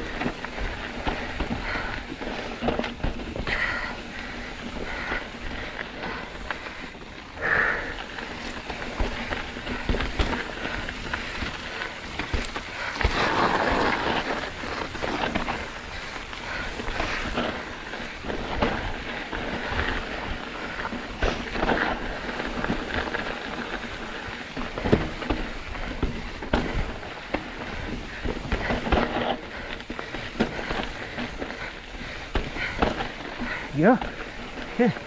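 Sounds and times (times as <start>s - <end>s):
squealing disc brakes: 0.0s - 3.0s, 9.0s - 9.6s, 11.2s - 35.0s
bike rattling over rocks: 0.0s - 35.0s
wind and tyre noise: 0.0s - 35.0s.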